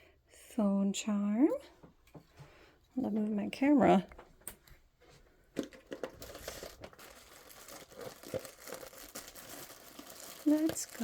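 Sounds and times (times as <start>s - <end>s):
packaging crinkling: 5.6s - 11.0s.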